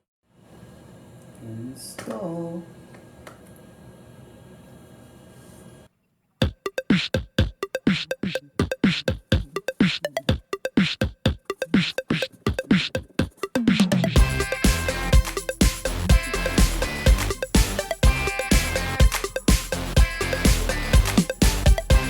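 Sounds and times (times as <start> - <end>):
electronic music with drum-machine beat: 6.4 - 22.0.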